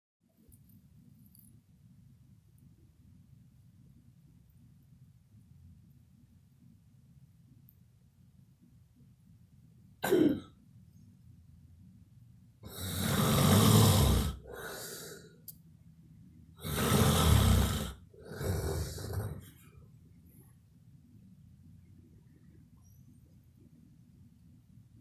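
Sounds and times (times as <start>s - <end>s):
person snoring loudly: 12.7s - 15.2s, 16.6s - 19.5s
quiet breath: 14.2s - 15.5s, 16.6s - 20.6s.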